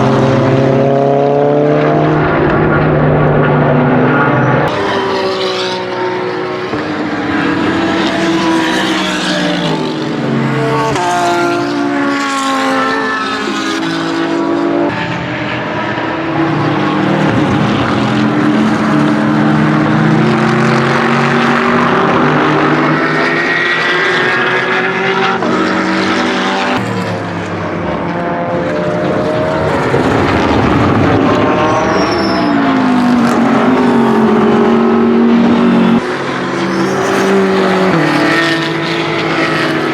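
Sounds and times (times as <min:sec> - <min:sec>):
race car engine running hard: 0:13.3 - 0:39.9.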